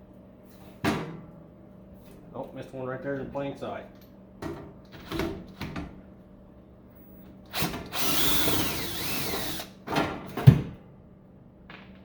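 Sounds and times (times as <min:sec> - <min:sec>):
power drill whining: 0:07.5 - 0:09.8.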